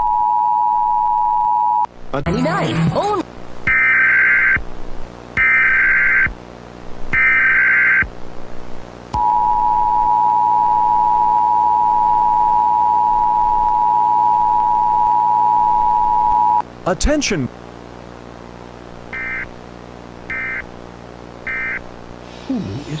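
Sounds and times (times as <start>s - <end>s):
harsh buzzing data bursts: 2.1s - 8.2s, 18.8s - 23.0s.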